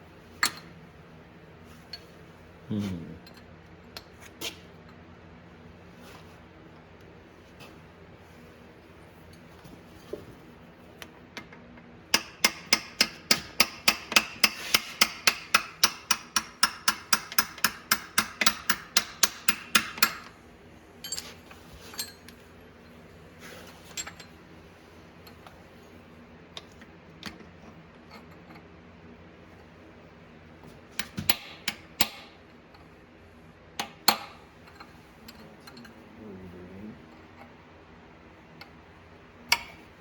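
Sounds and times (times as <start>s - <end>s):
tools and parts clinking: 0.4s - 0.8s, 21.0s - 22.5s, 23.6s - 24.4s, 34.2s - 36.0s.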